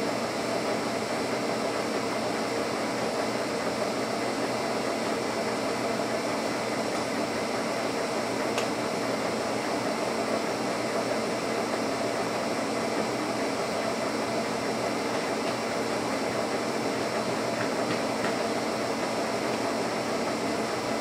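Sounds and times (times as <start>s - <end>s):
boring mill mechanical hum: 0.0s - 21.0s.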